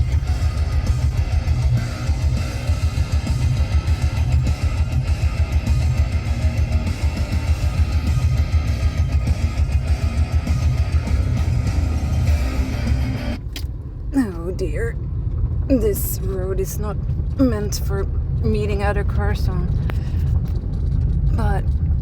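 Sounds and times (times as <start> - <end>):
music with guitar and beat: 0.0 - 13.4.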